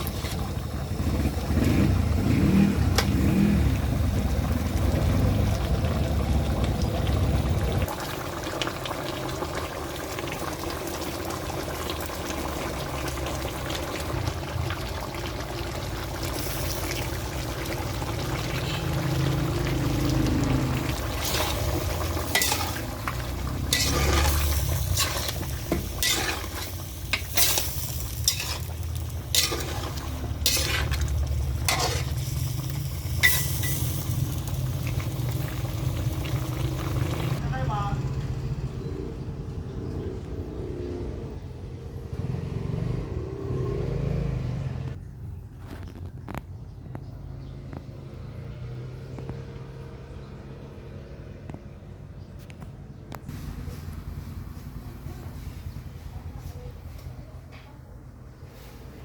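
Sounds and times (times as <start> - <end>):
metal utensil scraping a pan: 0.0 - 0.6, 20.9 - 34.2
food sizzling in a pan: 7.9 - 37.4.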